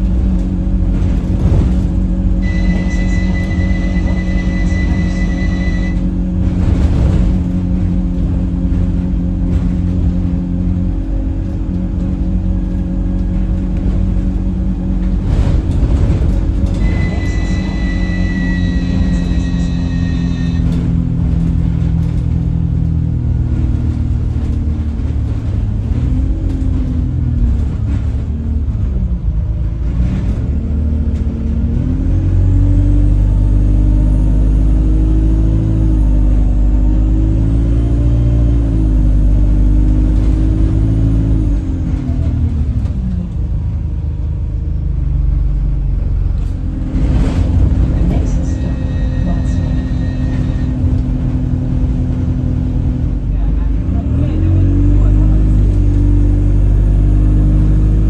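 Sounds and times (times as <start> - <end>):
heavy low rumble: 0.0 - 58.0
thin high whistle: 2.4 - 6.0, 16.7 - 20.6
droning horn-like tone: 2.4 - 6.1, 16.7 - 20.7, 48.1 - 51.0.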